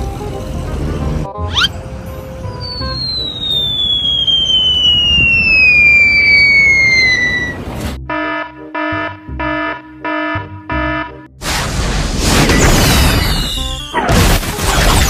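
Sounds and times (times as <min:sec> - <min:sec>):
whistle falling in pitch: 0:02.5 - 0:07.6.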